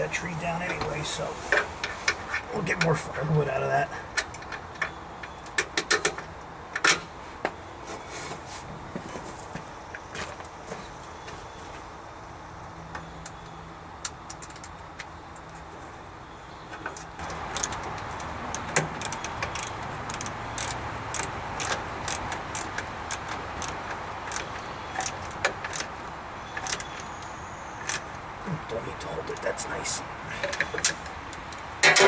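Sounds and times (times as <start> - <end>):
background hiss: 0.0 - 4.0.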